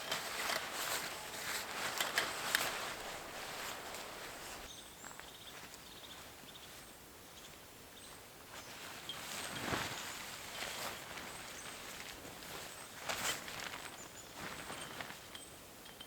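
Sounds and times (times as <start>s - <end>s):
rustling and crunching movement: 0.0s - 5.8s, 8.5s - 15.4s.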